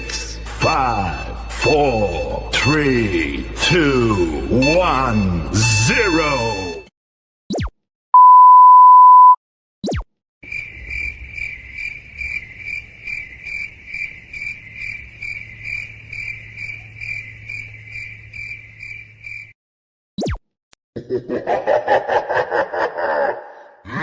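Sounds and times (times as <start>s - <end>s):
censor bleep: 8.1s - 9.4s
cricket chirping sound effect: 9.8s - 19.6s.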